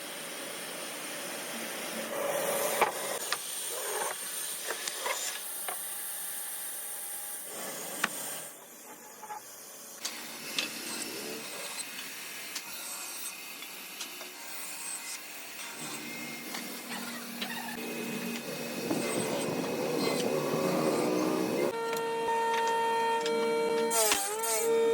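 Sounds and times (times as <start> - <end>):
wood rubbing and scraping: 17.4 - 21.7.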